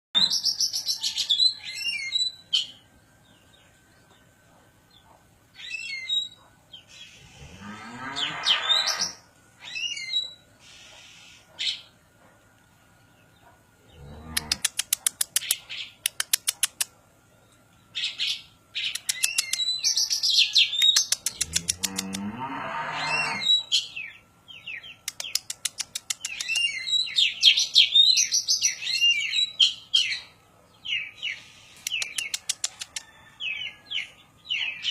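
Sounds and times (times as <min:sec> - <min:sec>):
bird mimicking cow call: 0:07.2 - 0:09.2, 0:19.8 - 0:23.8.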